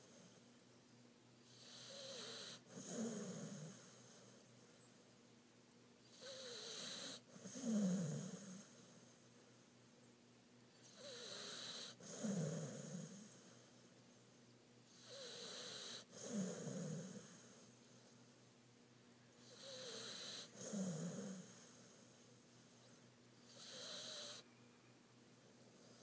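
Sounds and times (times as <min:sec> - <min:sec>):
dog snoring loudly: 0:01.5 - 0:04.2, 0:06.1 - 0:08.8, 0:10.8 - 0:13.5, 0:14.9 - 0:17.5, 0:19.4 - 0:21.7, 0:23.5 - 0:24.4.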